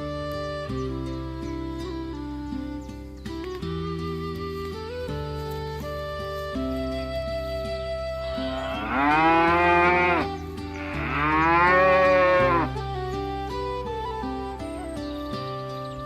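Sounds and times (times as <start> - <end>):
soft instrumental music: 0.0 - 16.0
cow mooing: 8.4 - 12.8.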